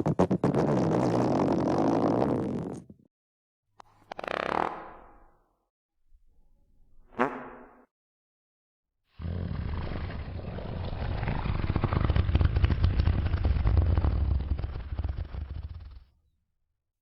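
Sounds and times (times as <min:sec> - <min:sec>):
low rumbling fart: 0:00.0 - 0:02.9, 0:09.2 - 0:16.0.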